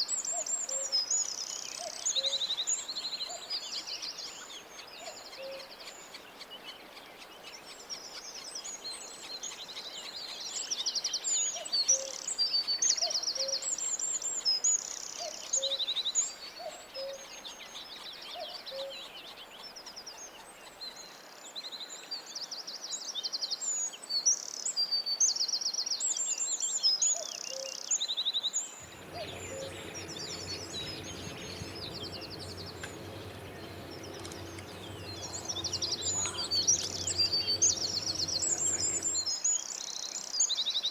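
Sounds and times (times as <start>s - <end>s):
birds chirping and trilling: 28.8s - 39.3s
low rumble: 28.8s - 39.4s.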